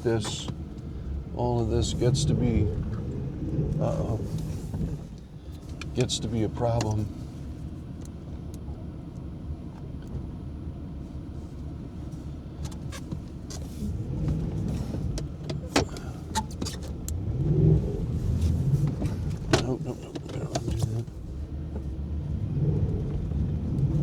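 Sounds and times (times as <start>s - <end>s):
truck engine revving: 0.0s - 5.3s, 13.8s - 24.0s.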